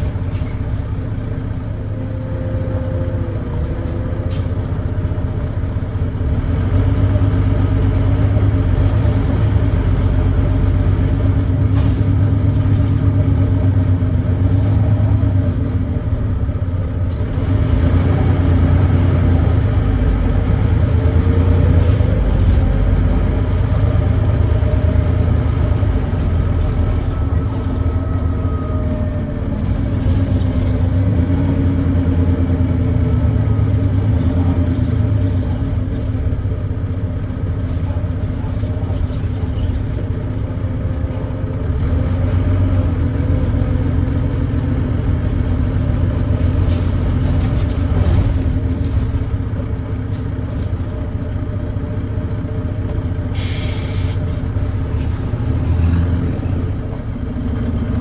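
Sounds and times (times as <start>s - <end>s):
diesel bus engine running: 0.0s - 58.0s
short hiss: 53.4s - 54.2s.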